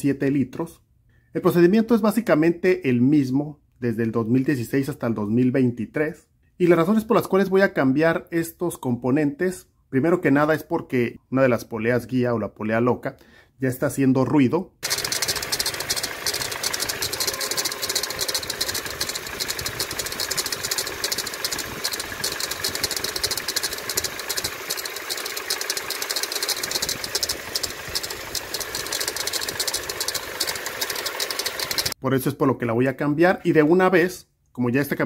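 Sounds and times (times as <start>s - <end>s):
engine idling: 14.8s - 32.0s
metallic ticking chirp from belt drive: 14.8s - 32.0s.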